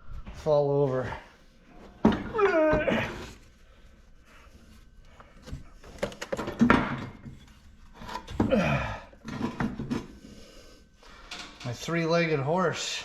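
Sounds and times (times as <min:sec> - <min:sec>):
objects thunking: 0:01.8 - 0:03.4, 0:05.4 - 0:10.1.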